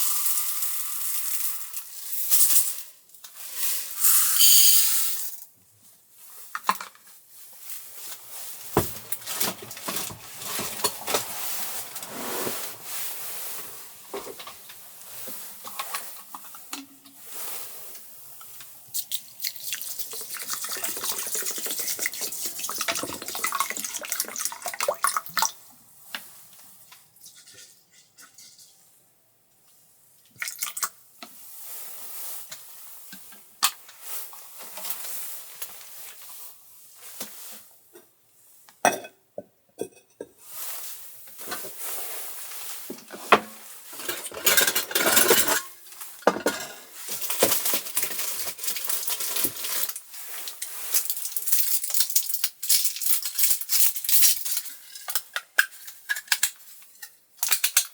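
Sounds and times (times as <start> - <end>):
dishes and cutlery clattering: 43.1 - 49.8.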